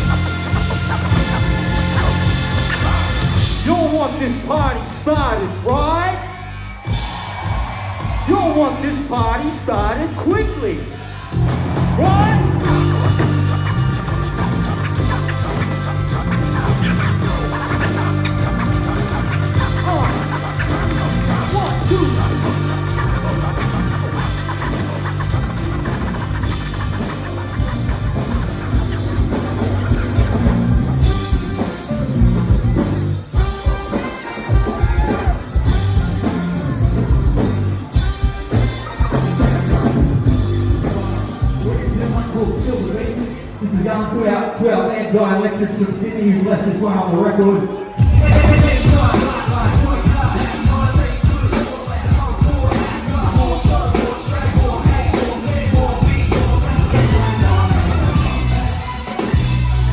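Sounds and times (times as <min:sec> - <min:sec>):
drum kit: 0:00.0 - 0:43.6, 0:47.1 - 0:59.9
bass guitar: 0:00.0 - 0:44.2, 0:45.7 - 0:59.9
keyboard: 0:00.0 - 0:59.9
live hip-hop band: 0:00.0 - 0:59.9
person singing: 0:39.9 - 0:42.8, 0:48.0 - 0:59.9.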